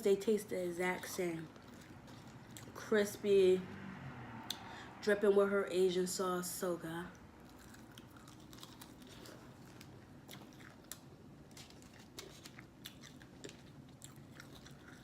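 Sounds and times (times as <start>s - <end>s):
chewing crispy chicken wings: 0.7s - 2.9s, 7.4s - 15.0s.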